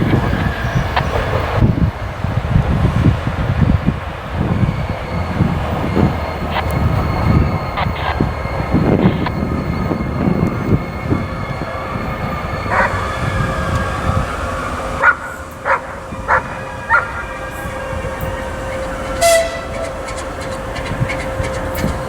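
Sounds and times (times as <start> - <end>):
diesel locomotive rumble: 0.0 - 22.0
dog barking: 15.0 - 17.2.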